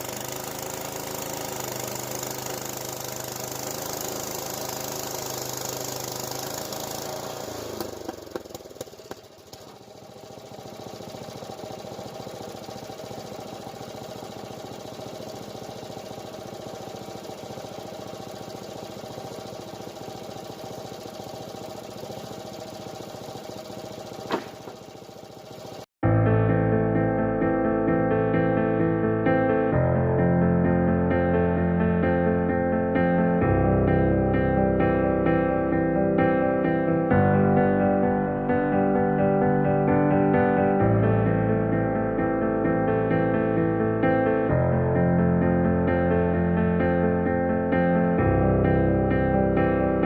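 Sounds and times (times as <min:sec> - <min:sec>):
engine clicks: 0:00.0 - 0:25.8
small gas engine running: 0:00.0 - 0:26.0
sharp knock: 0:24.3 - 0:24.8.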